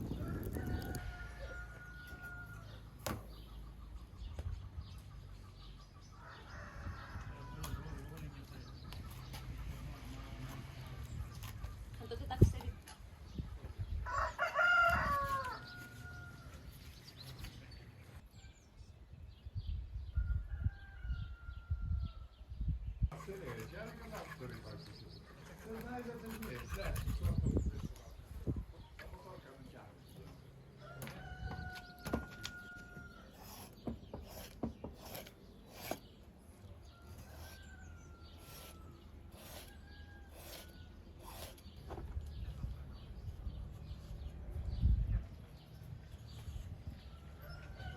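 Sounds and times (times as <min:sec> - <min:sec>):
distant rooster crowing: 0:00.0 - 0:03.2, 0:06.2 - 0:08.4, 0:14.0 - 0:16.6, 0:20.2 - 0:22.4, 0:30.7 - 0:33.6, 0:36.8 - 0:41.0, 0:47.0 - 0:47.9
rooster crowing: 0:00.1 - 0:02.8, 0:14.1 - 0:16.5, 0:30.8 - 0:33.3, 0:47.4 - 0:47.9.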